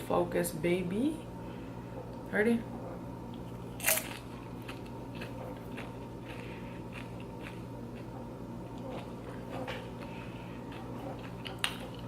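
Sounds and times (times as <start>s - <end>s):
chewing crunchy chips: 3.4s - 12.0s
crunchy bite of chip: 3.7s - 8.1s.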